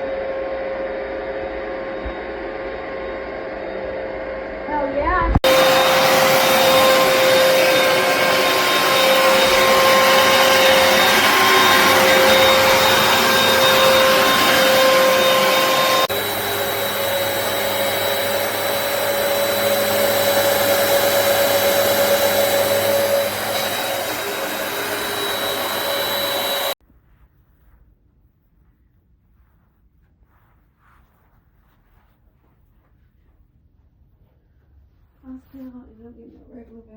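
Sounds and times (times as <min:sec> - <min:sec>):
carpet cleaner motor whine: 0:00.0 - 0:04.7, 0:05.4 - 0:26.8
suction rushing: 0:05.4 - 0:26.8.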